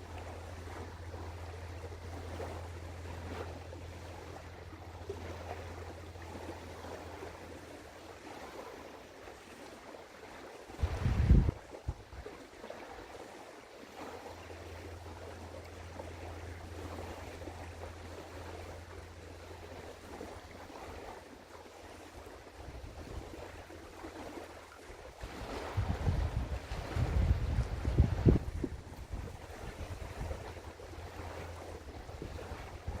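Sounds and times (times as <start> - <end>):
ship engine drone: 0.0 - 8.2
water noise: 0.0 - 33.0
wind on microphone: 10.7 - 12.4, 25.2 - 33.0.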